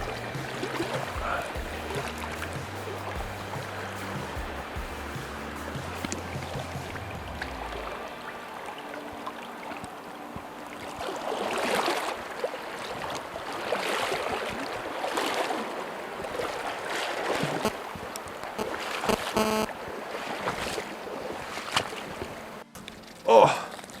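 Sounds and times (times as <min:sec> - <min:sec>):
river water rushing and splashing: 0:00.0 - 0:24.0
short buzz: 0:19.1 - 0:19.7.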